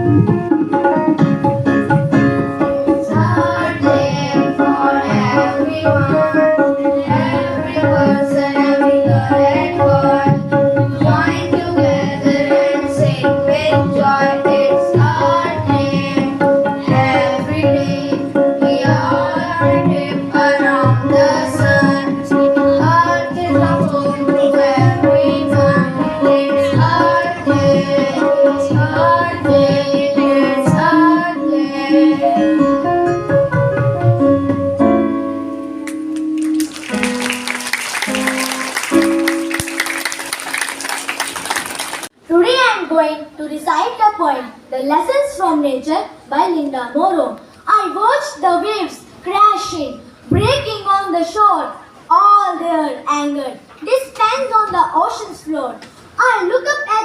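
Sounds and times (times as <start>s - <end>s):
tabla playing: 0.0s - 35.1s, 35.8s - 42.2s
ornamented melody: 0.0s - 42.1s.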